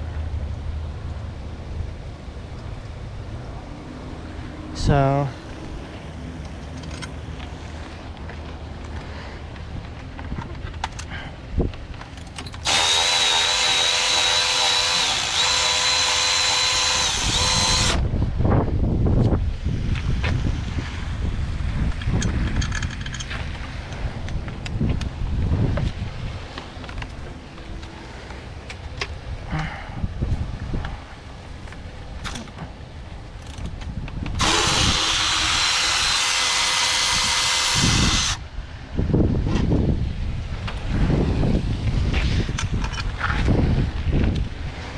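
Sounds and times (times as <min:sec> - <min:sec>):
power driver motor whine: 0:12.6 - 0:18.0, 0:34.4 - 0:38.4.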